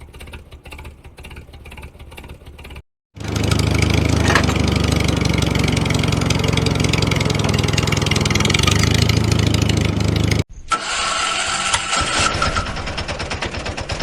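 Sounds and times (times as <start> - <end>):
engine running with pulsing throb: 0.0 - 10.4.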